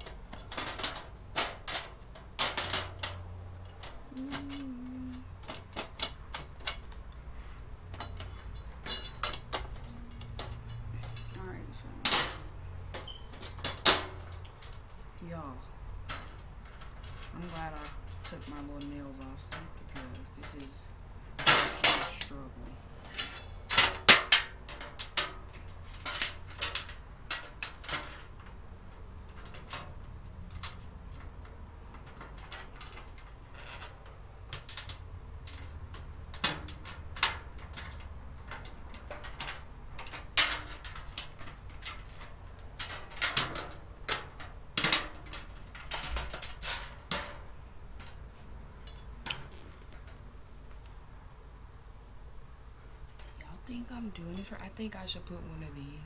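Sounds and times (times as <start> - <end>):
clicks and clinks of parts handled: 5.4 - 11.4, 21.4 - 22.4, 48.8 - 51.0.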